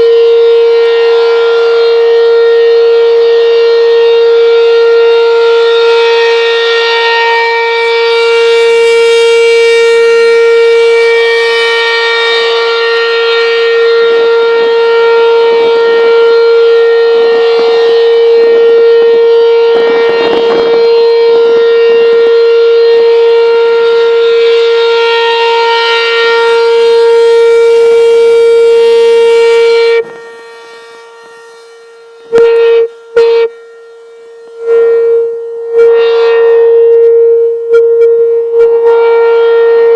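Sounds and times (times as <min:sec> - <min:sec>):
tornado siren steady tone: 0:00.0 - 0:39.9.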